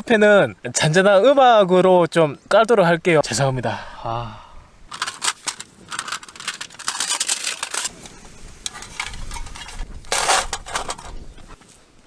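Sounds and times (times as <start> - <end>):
small objects clicking and clinking: 4.9 - 8.0
loud rustle: 4.9 - 11.9.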